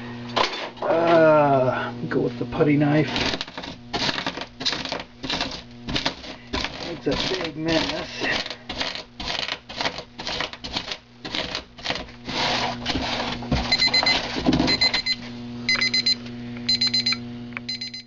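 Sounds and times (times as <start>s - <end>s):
steady low hum: 0.0s - 18.0s
hand tools clattering and scraping: 3.0s - 14.9s
electronic alarm beeps: 13.7s - 18.0s.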